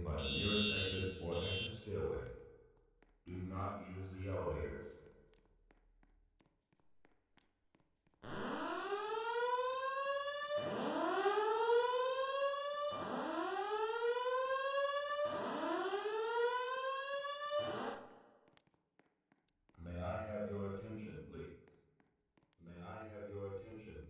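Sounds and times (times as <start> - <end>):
fire alarm whoop tone: 0.0 - 1.8, 8.3 - 18.1.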